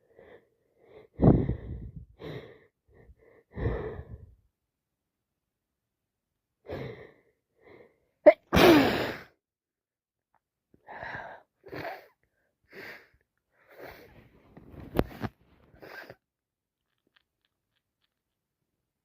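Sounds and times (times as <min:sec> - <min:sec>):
person sneezing: 0:08.3 - 0:09.3.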